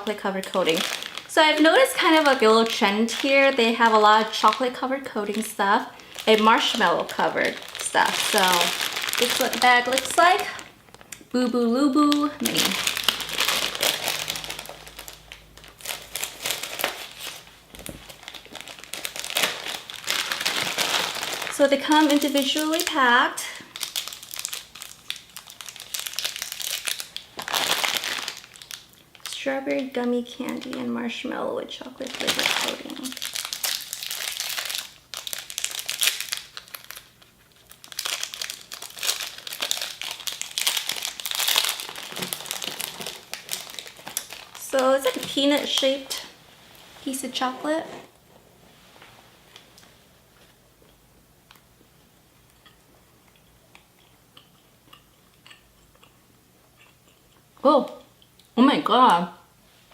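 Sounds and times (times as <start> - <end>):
plastic candy bag crinkling: 0.0 - 46.4.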